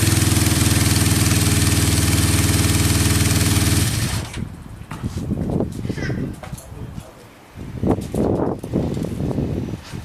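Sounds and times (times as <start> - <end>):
motorcycle engine idling: 0.0 - 4.2.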